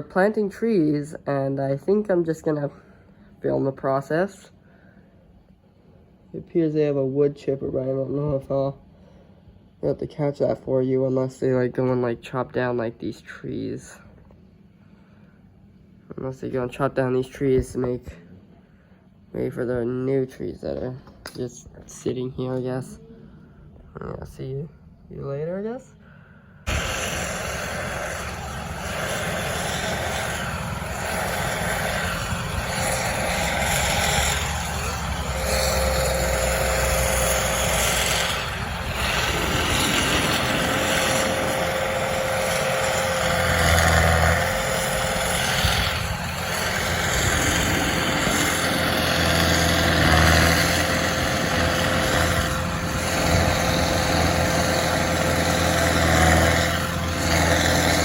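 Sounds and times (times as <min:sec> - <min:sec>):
steady whine: 0:25.5 - 0:58.0
heavy machinery engine running: 0:26.7 - 0:58.0.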